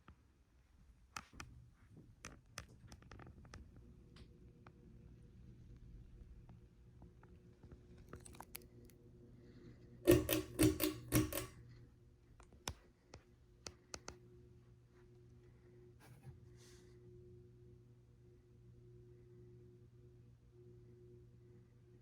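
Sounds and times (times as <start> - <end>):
ceiling fan motor humming: 9.1 - 12.2
sharp clicks and rattles: 10.1 - 11.6.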